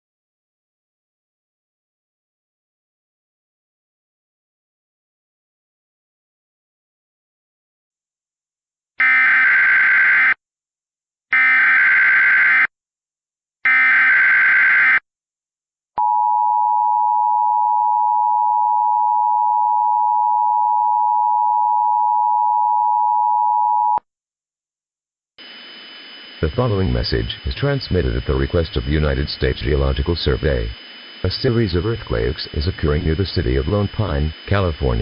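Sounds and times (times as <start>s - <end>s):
warbling data tones: 25.4s - 35.0s.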